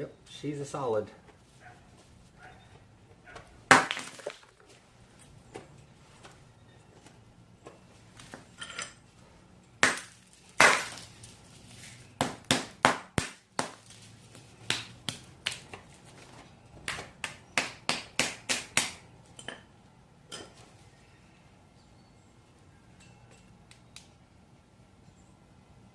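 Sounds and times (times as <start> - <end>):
ice block being struck and chipped: 3.7 - 4.4.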